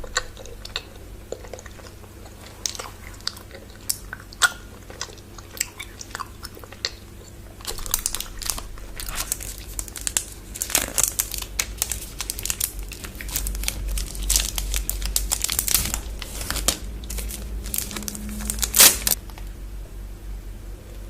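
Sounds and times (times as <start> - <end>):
wrapper crinkling and tearing: 7.6 - 19.5.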